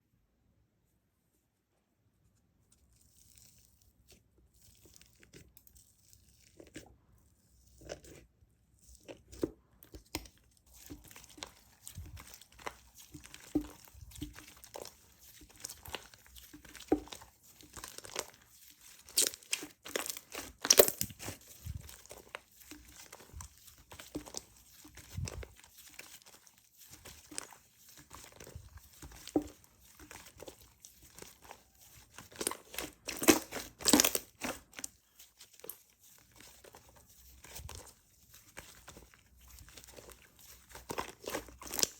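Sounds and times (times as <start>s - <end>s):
slime squeezed with sticky pops: 19.0s - 22.4s, 32.1s - 34.9s.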